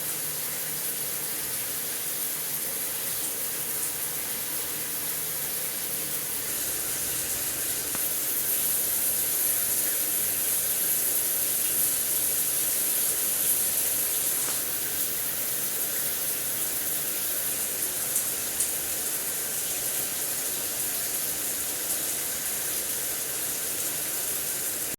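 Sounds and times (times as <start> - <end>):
shower water spraying: 5.8 - 16.0.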